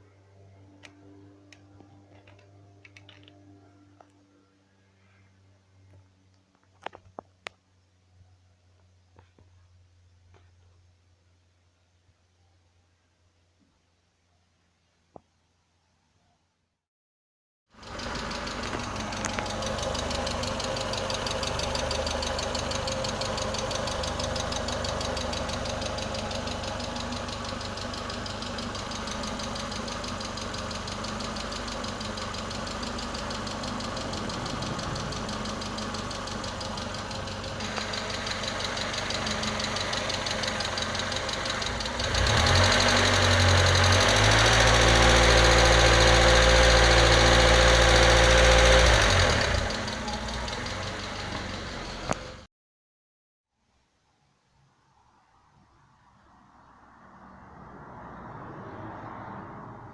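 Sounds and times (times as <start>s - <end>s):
car engine idling: 17.8s - 52.5s.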